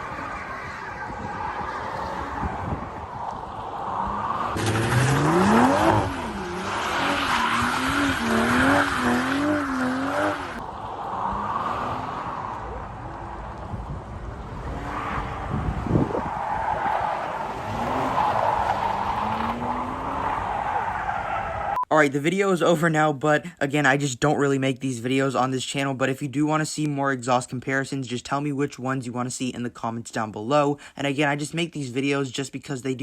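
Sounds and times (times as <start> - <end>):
tyres skidding and squealing: 0.0 - 21.8
sports car engine revving: 4.1 - 10.6.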